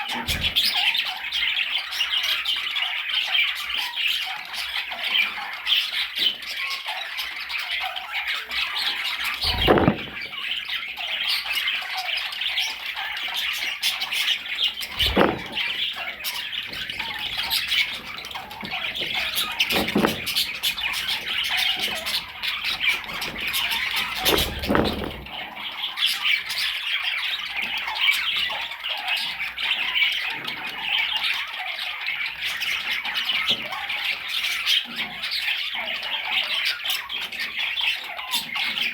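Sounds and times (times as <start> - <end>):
budgerigars chattering and squawking: 0.0 - 38.9
dull thumps: 9.4 - 10.3, 14.8 - 15.8, 16.6 - 25.4.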